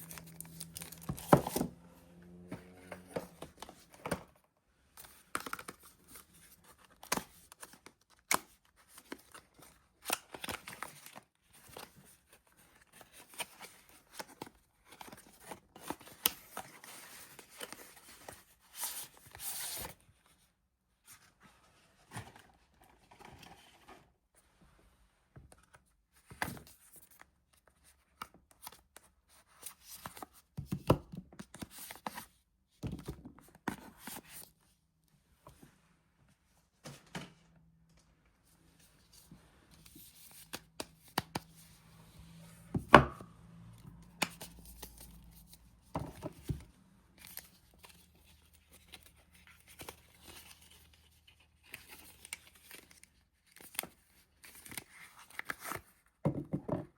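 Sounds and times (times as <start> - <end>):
packaging tearing and crinkling: 0.0 - 1.7.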